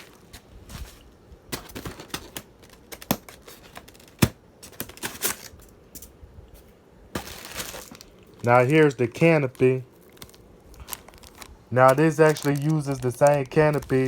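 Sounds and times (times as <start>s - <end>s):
hard plastic pieces clicking together: 10.8s - 14.0s.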